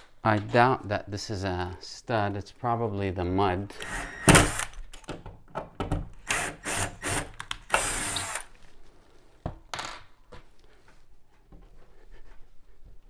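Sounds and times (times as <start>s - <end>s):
anchor screwing into drywall: 5.8s - 8.5s.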